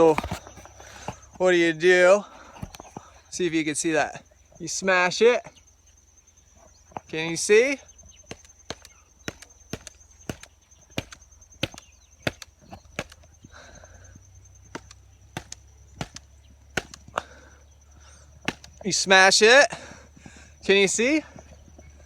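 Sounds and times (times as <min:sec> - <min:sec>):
stick whacking hard fruit: 0:08.3 - 0:13.2, 0:14.8 - 0:17.3, 0:18.5 - 0:18.8.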